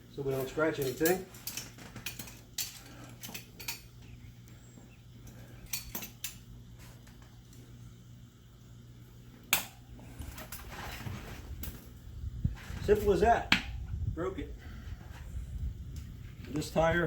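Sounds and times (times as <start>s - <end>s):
low steady hum: 0.0s - 17.0s
metallic clinks and knocks: 0.3s - 4.0s, 5.2s - 6.5s.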